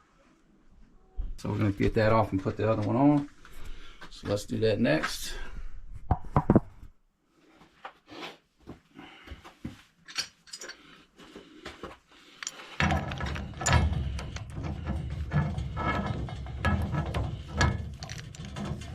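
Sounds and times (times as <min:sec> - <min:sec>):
pipe fittings clinking: 0:10.0 - 0:10.9, 0:12.3 - 0:18.9
wrench being handled: 0:12.4 - 0:13.2.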